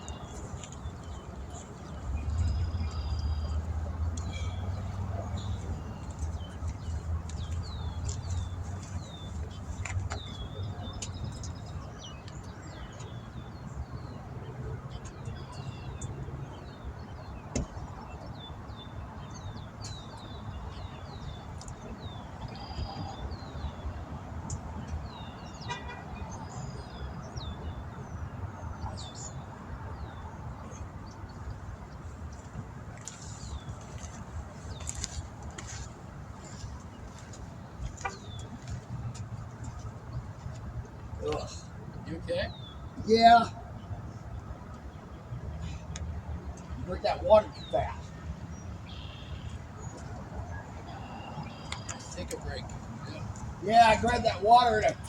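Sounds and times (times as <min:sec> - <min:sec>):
birds chirping: 0:00.0 - 0:55.0
low traffic rumble: 0:00.0 - 0:55.0
vehicle horn toot: 0:25.6 - 0:26.2, 0:38.0 - 0:38.3.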